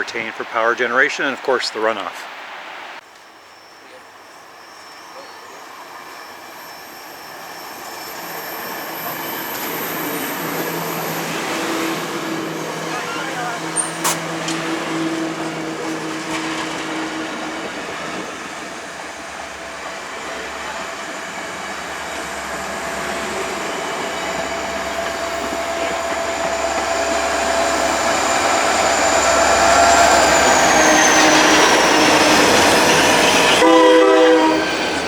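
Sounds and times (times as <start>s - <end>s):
train running by: 0.0s - 35.0s
high wheel squeal: 4.3s - 18.0s, 20.2s - 35.0s
train horn: 11.6s - 17.7s, 33.4s - 35.0s.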